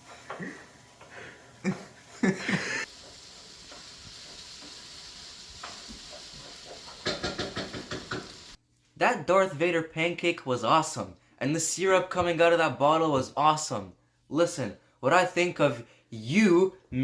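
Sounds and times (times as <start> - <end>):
food sizzling in a frying pan: 0.0 - 8.6.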